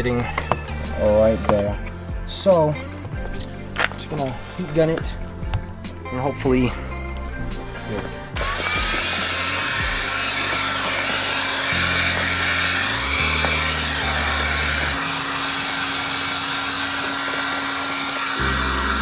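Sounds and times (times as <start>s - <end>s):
background music with deep bass: 0.0s - 19.0s
heat gun blowing with faint whine: 8.2s - 19.0s.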